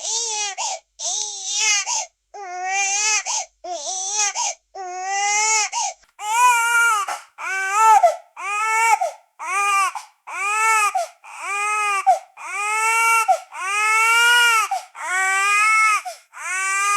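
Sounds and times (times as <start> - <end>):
newborn baby crying: 0.0 - 16.9.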